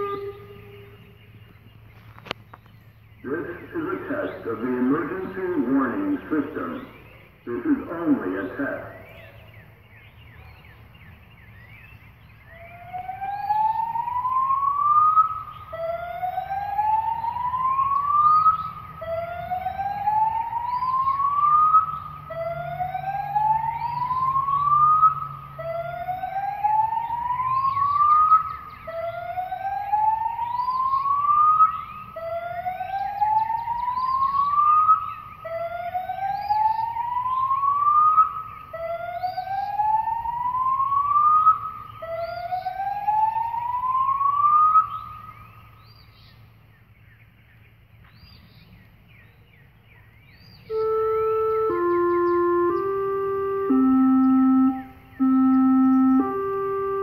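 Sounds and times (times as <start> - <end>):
rising whoop siren: 0.0 - 0.9, 12.5 - 45.0, 50.7 - 57.0.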